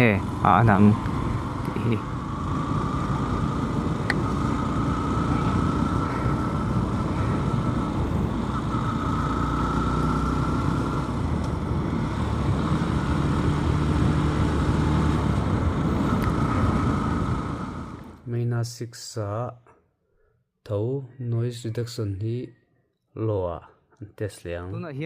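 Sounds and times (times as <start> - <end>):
motorcycle engine rumble: 0.0 - 18.2
wind noise: 0.8 - 18.1.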